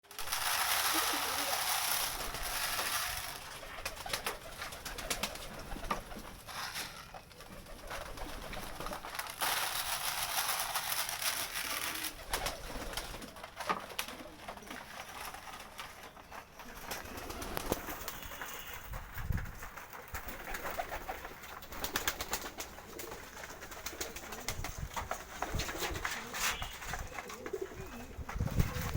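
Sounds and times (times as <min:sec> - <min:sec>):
rustling: 0:00.0 - 0:28.9
pigeons cooing: 0:20.1 - 0:28.9.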